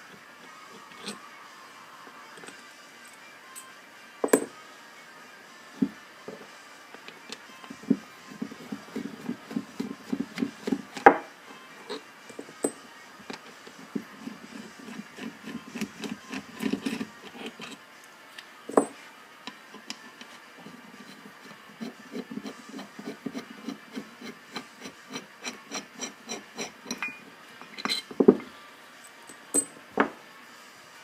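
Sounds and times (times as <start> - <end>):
rhythmic rubbing on metal parts: 6.4 - 17.8, 18.9 - 28.5.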